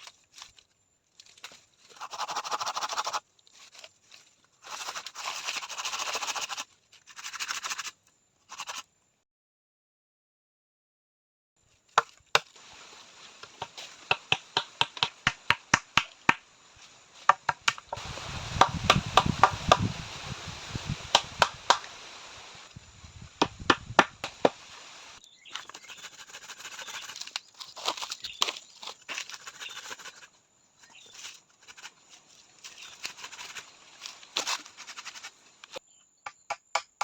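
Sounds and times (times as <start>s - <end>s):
rustling: 0.0s - 8.0s, 11.7s - 35.8s
sharp chopping strikes on wood: 13.6s - 16.4s, 17.3s - 19.9s, 21.1s - 21.9s, 23.4s - 24.6s, 36.2s - 37.0s.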